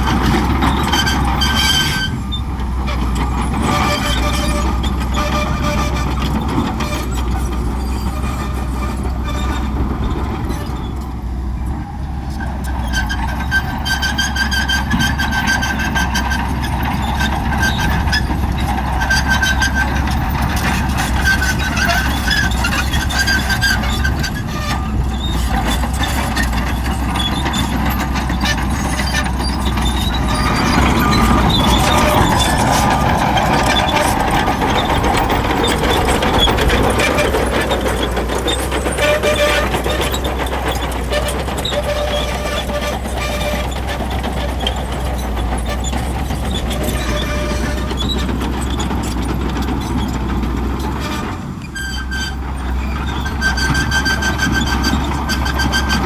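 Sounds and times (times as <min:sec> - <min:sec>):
bulldozer engine running: 0:00.0 - 0:56.0
high squealing tones: 0:21.3 - 0:48.9.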